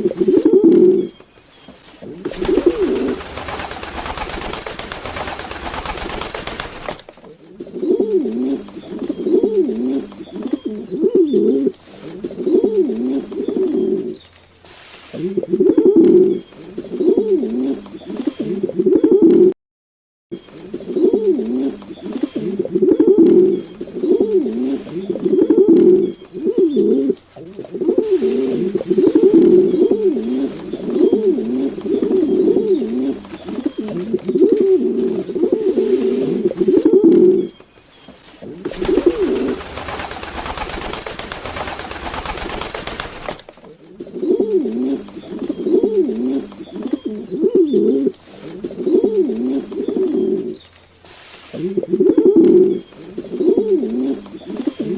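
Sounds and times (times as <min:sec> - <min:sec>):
pigeons cooing: 0:00.0 - 0:01.2, 0:02.0 - 0:14.2, 0:15.1 - 0:19.5, 0:20.4 - 0:37.6, 0:38.4 - 0:50.6, 0:51.3 - 0:54.9
steady hissing noise: 0:11.6 - 0:15.6, 0:45.0 - 0:53.5.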